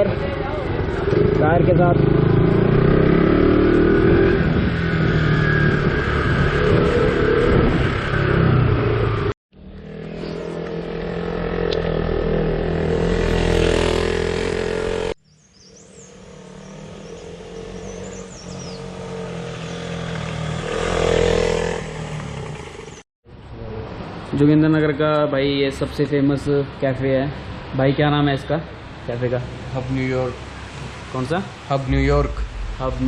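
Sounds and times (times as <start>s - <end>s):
motorcycle engine accelerating: 0.8s - 23.0s.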